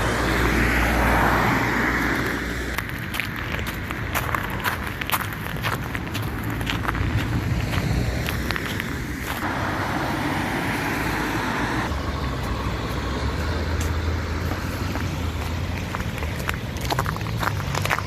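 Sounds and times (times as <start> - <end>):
vehicle engine hum: 0.0 - 18.0
footsteps in snow: 1.9 - 11.0, 13.7 - 18.0.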